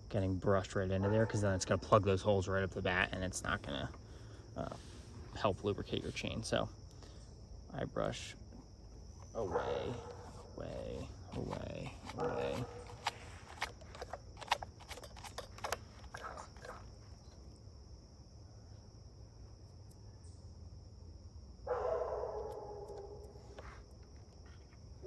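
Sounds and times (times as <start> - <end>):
scratches and clicks: 8.5 - 17.4
toothbrush scrubbing: 10.0 - 17.0.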